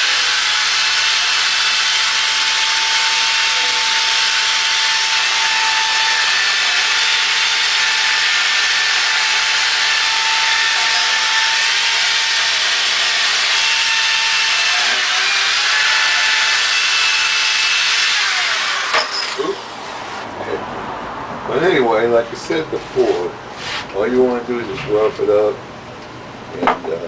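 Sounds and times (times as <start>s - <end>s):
power tool motor whine: 0.0s - 19.8s.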